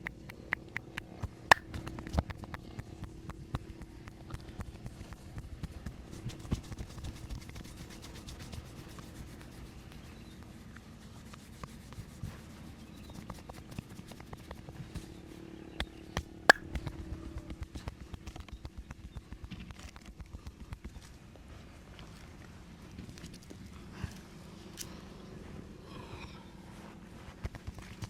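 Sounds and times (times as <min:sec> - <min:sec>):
hands rubbing skin and hair: 0:00.0 - 0:01.6, 0:06.2 - 0:10.0
quick light taps and clicks: 0:00.0 - 0:07.7.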